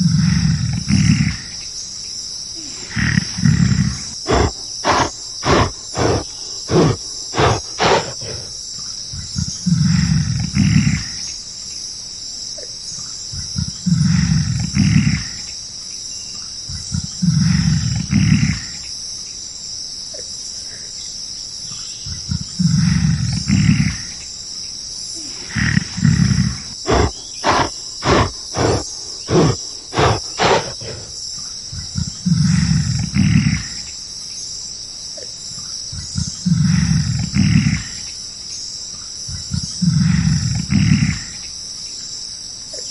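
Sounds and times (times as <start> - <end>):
animal roaring: 0.0 - 1.6, 2.6 - 8.6, 25.2 - 31.2
insects chorus: 0.0 - 42.9.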